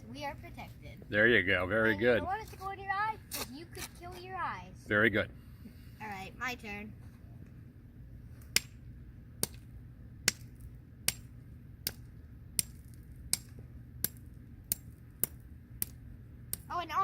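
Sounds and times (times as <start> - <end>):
hammer tapping rock: 10.3 - 16.7.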